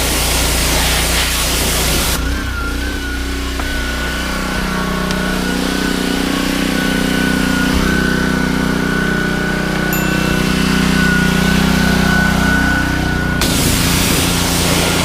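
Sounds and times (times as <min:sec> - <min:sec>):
spray hiss: 0:00.0 - 0:02.2, 0:13.4 - 0:15.0
pressure washer engine running: 0:00.0 - 0:15.0
high whine: 0:01.9 - 0:15.0.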